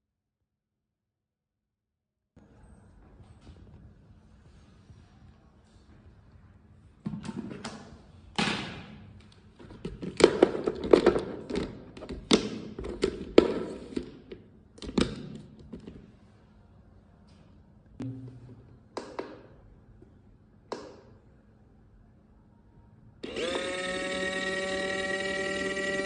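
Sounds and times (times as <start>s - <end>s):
objects knocking and thudding: 18.0s - 19.4s.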